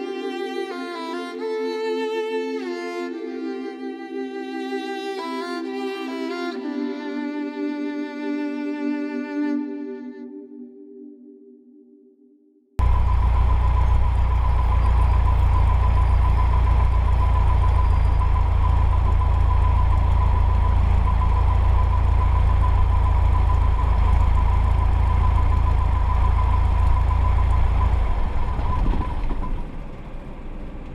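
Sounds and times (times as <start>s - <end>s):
thin steady high tone: 12.8s - 28.7s
aircraft engine drone: 12.8s - 30.9s.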